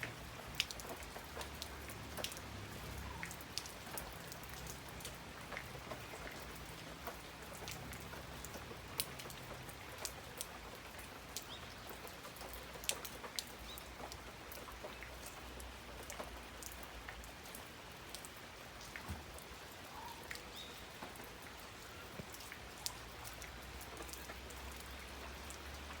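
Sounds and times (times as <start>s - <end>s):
raindrops ticking on surface: 0.0s - 26.0s
rain hissing: 16.2s - 26.0s.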